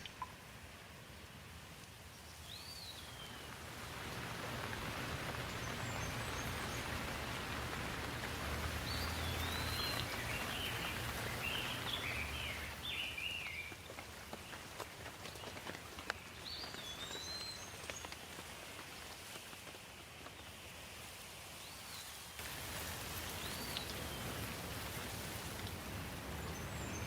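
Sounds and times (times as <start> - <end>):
steady rain falling: 0.0 - 27.0
bird chirping: 8.6 - 13.8.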